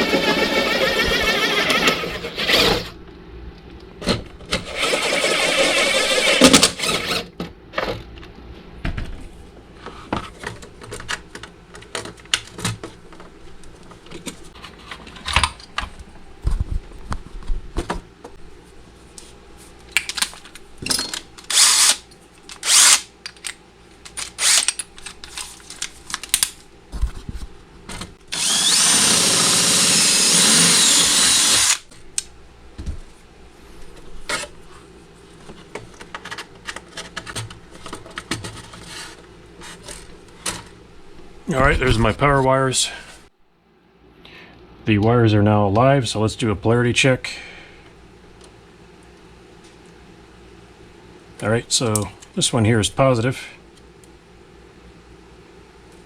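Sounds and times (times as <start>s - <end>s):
power drill running: 0.0s - 2.8s, 4.7s - 7.2s, 21.5s - 22.0s, 22.6s - 23.0s, 28.3s - 31.9s.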